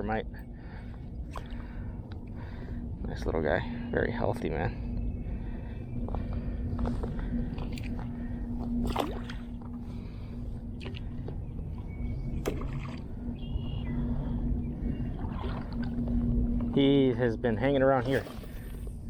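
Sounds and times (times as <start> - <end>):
steady low rumble: 0.0 - 19.0
water sloshing: 0.7 - 2.4, 6.2 - 17.0, 17.9 - 18.9
short water splashes: 8.8 - 9.6, 12.4 - 13.1, 15.1 - 16.1.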